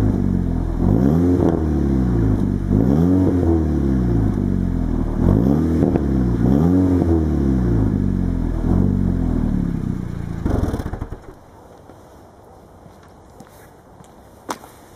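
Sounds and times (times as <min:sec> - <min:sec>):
exhaust crackles and pops: 0:00.0 - 0:03.5, 0:04.1 - 0:11.9
car engine revving: 0:00.0 - 0:11.4.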